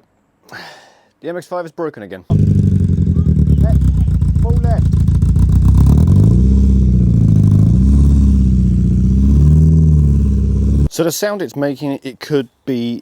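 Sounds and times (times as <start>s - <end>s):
car engine revving: 2.3s - 10.9s.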